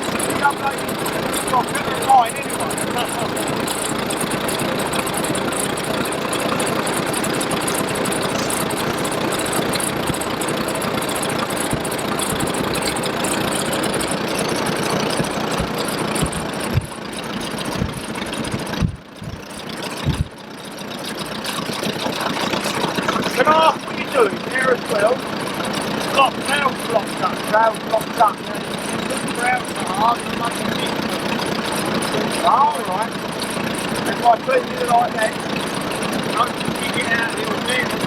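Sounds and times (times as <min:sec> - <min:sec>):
tractor engine running: 0:00.0 - 0:38.0
low thumps: 0:15.0 - 0:20.3.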